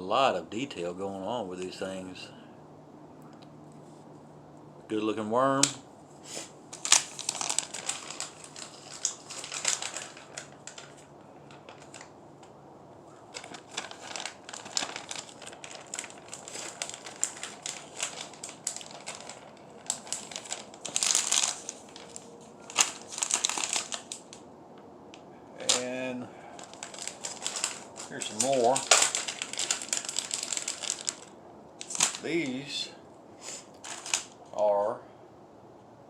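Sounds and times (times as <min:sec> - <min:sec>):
plastic packaging crinkling: 0:06.3 - 0:24.5, 0:25.6 - 0:32.7, 0:33.5 - 0:34.5.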